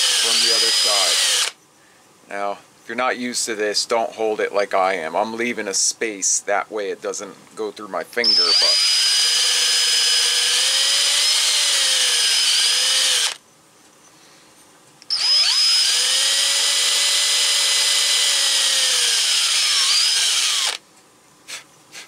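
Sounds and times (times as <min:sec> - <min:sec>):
electric drill whining: 0:00.0 - 0:01.6, 0:08.2 - 0:13.4, 0:15.1 - 0:20.8.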